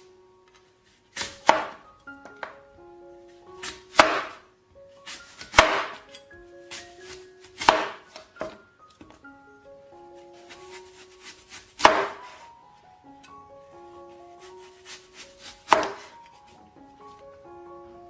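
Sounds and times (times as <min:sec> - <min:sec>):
soft background music: 0:00.0 - 0:18.0
knife chopping on cutting board: 0:01.2 - 0:01.8, 0:03.6 - 0:04.4, 0:05.1 - 0:06.1, 0:06.7 - 0:08.6, 0:11.2 - 0:12.4, 0:14.5 - 0:16.2.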